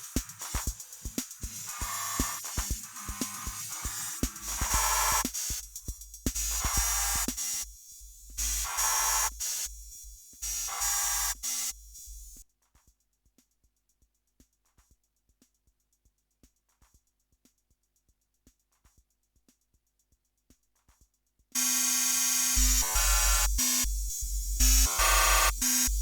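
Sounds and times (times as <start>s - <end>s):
shimmering processed drum loop: 0.0s - 12.4s, 21.6s - 26.0s.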